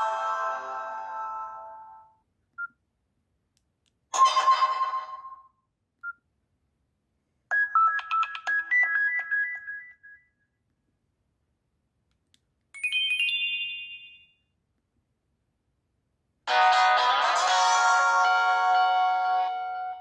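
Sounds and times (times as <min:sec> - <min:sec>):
phone ringtone: 0:12.8 - 0:14.3
bright chime: 0:12.8 - 0:14.4.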